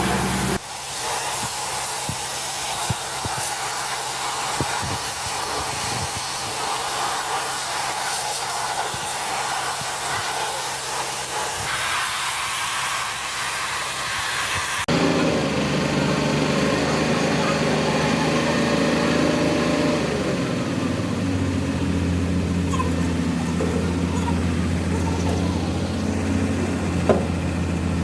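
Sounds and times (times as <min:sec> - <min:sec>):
steady hiss: 0:00.0 - 0:14.9.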